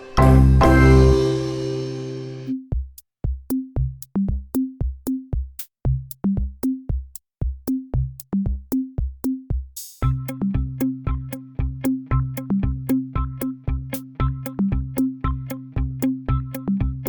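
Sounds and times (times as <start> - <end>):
held synth chord: 0.0 - 2.5
sparse electronic beat: 0.0 - 7.0.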